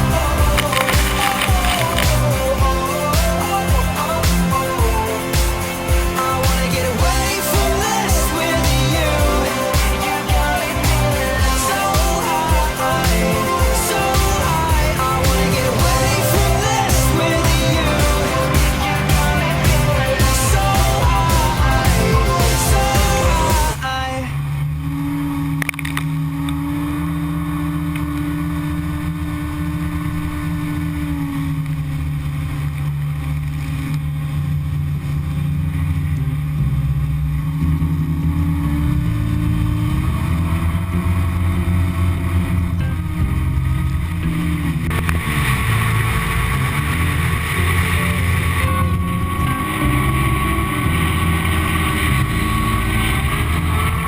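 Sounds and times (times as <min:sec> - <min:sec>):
jet ski engine running: 0:00.0 - 0:24.2.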